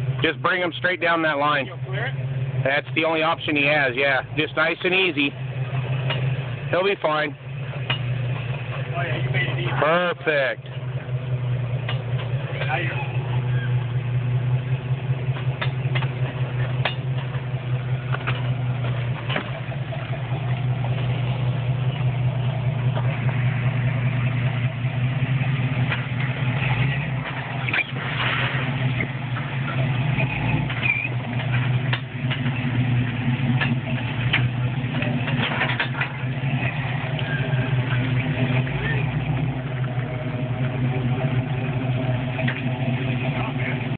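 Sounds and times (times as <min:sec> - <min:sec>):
engine running at low revs: 0:00.0 - 0:43.9
sharp clicks and knocks: 0:06.0 - 0:06.4, 0:07.8 - 0:08.9, 0:11.8 - 0:12.8, 0:15.3 - 0:21.1, 0:25.8 - 0:38.6.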